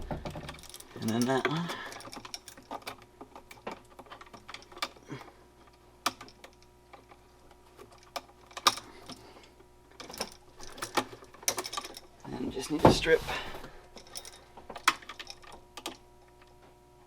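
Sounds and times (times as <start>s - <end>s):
wire connectors clicking: 0.0s - 9.2s, 13.9s - 16.6s
electrical wires rustling: 0.0s - 16.9s.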